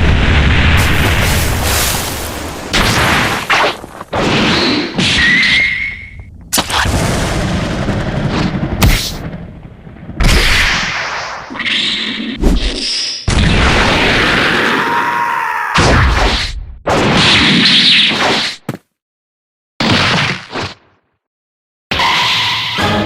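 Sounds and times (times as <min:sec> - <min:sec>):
booms and impacts: 0:00.0 - 0:05.2, 0:06.1 - 0:11.5.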